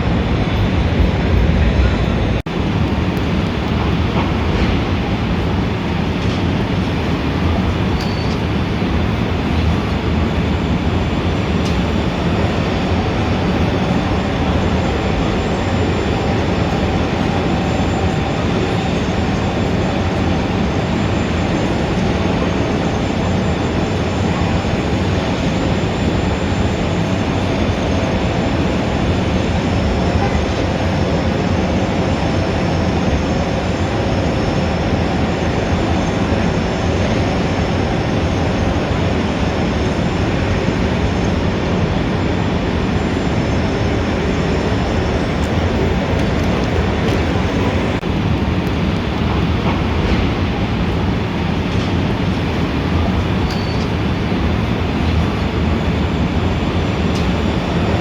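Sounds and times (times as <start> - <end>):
city traffic rumble: 0.0 - 58.0.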